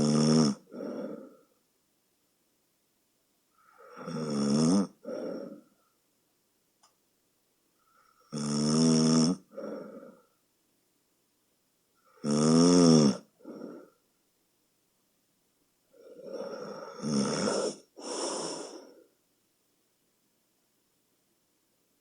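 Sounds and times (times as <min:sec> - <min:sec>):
woman snoring loudly: 0:00.0 - 0:01.4, 0:03.6 - 0:05.6, 0:08.3 - 0:10.2, 0:12.1 - 0:13.8, 0:16.0 - 0:19.0
soft breath: 0:00.7 - 0:01.6, 0:05.0 - 0:06.0, 0:09.5 - 0:10.4, 0:13.4 - 0:14.2, 0:15.9 - 0:19.2.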